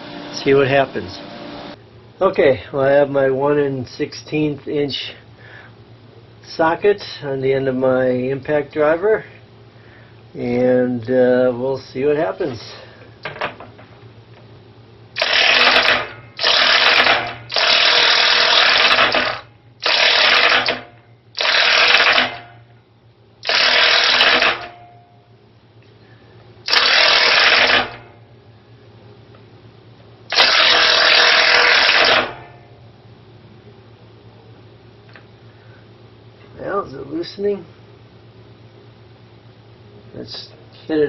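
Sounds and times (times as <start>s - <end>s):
impact wrench hammering: 15.2s - 22.5s, 23.4s - 24.9s, 26.7s - 28.0s, 30.3s - 32.5s.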